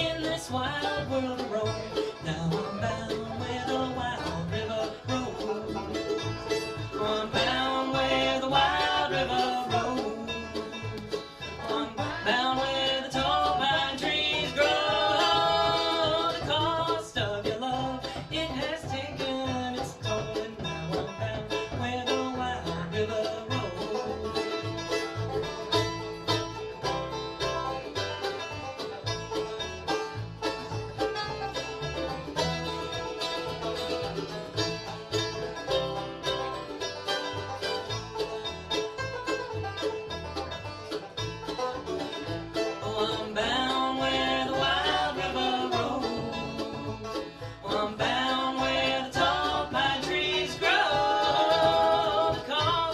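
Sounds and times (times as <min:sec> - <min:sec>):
banjo picking: 0:00.0 - 0:52.9
mandolin: 0:00.0 - 0:52.9
rhythm guitar: 0:00.0 - 0:52.9
upright bass pulse: 0:00.0 - 0:52.9.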